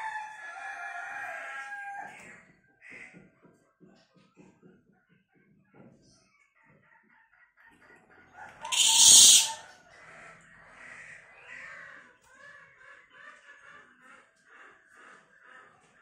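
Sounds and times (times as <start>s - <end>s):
songbird chattering: 8.7s - 9.6s.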